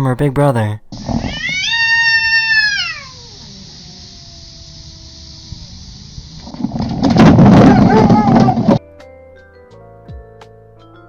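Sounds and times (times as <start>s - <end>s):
cat yowling: 1.1s - 5.7s, 7.4s - 8.8s
cat moaning low: 1.2s - 5.8s, 7.4s - 8.8s.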